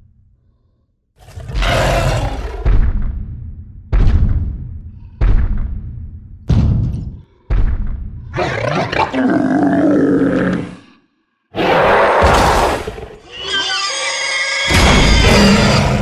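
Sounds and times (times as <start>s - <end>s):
monster growling roar: 1.2s - 2.7s, 8.4s - 10.9s, 11.6s - 13.3s, 14.6s - 16.0s
heavy booming thuds: 2.5s - 8.3s.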